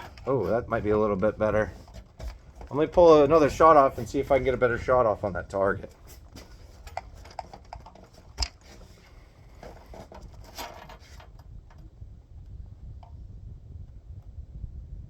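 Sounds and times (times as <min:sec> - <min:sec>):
rustling: 0:00.0 - 0:11.4
low steady rumble: 0:00.0 - 0:15.0.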